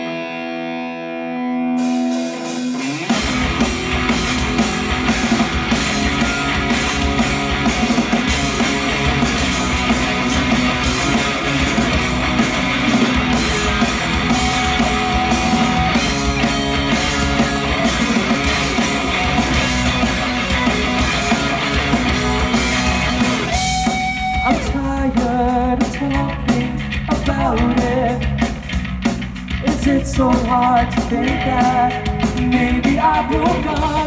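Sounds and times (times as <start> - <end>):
distorted guitars: 0.0 - 34.0
drums: 0.0 - 34.0
rock band playing: 0.0 - 34.0.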